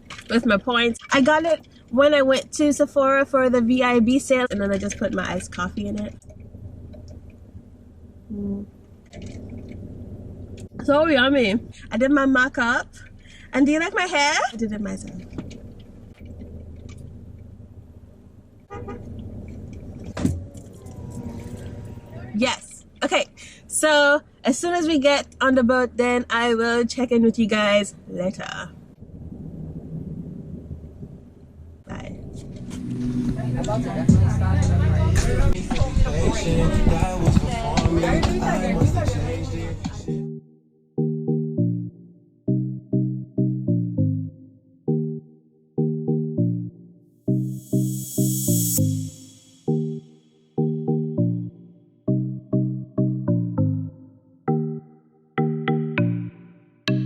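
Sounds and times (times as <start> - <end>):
car engine hum inside cabin: 1.9 - 23.4, 30.5 - 38.2
music of sharply struck pitched notes: 47.3 - 51.2.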